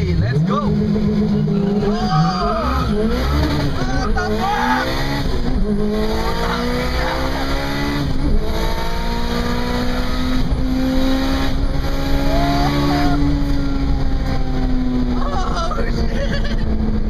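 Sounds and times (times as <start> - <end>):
car engine at full throttle: 0.0 - 17.0.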